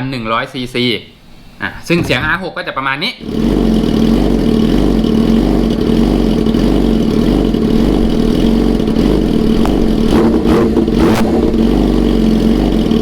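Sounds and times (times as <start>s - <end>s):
motorcycle idling: 3.2s - 13.0s.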